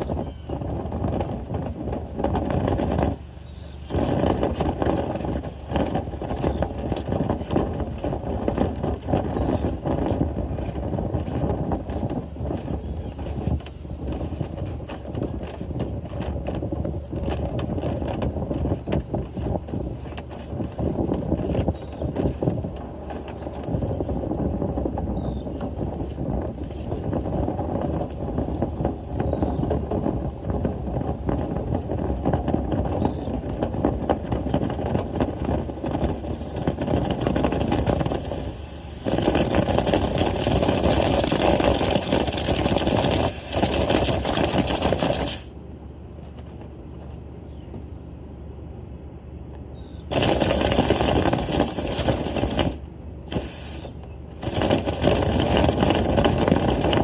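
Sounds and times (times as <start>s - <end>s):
motor running: 17.2s - 45.5s, 50.1s - 57.0s
strong hiss: 37.9s - 45.6s, 50.1s - 57.0s.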